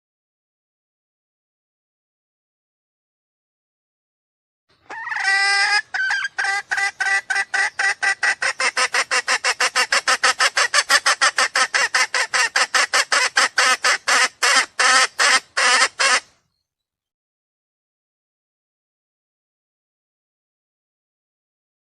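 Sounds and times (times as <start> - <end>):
bird lure call clucks: 4.7 - 16.8.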